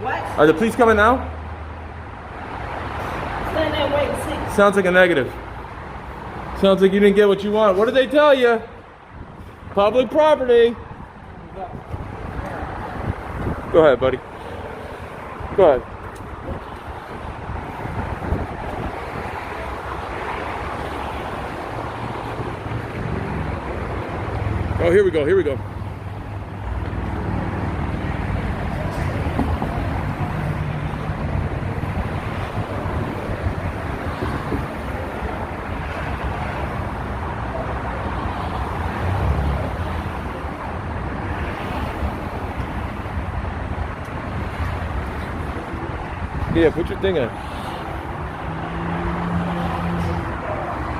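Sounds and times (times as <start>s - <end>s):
expressway traffic rumble: 0.0s - 50.9s
wind on microphone: 10.8s - 20.8s, 28.4s - 35.8s.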